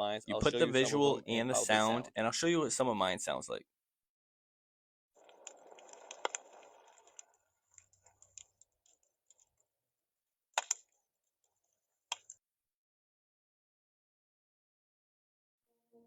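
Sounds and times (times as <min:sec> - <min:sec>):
small ticks: 0:05.2 - 0:09.6.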